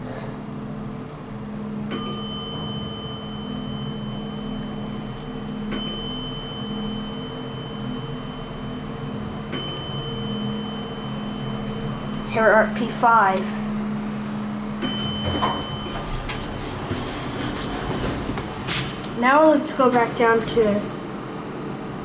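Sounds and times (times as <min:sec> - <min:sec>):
elevator cab hum: 0:00.0 - 0:22.0
elevator floor chime: 0:01.6 - 0:18.1.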